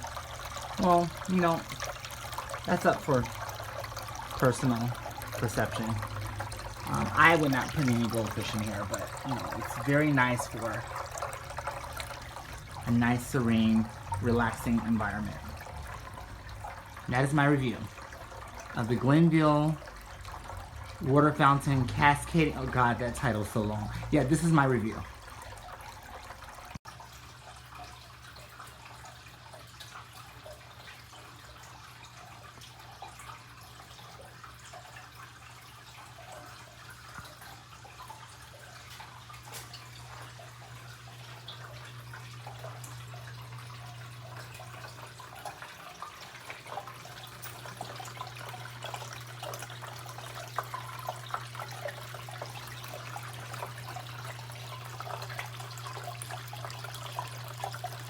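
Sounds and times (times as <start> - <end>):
fountain water splashing: 0.0 - 25.7
water pump humming: 0.0 - 58.0.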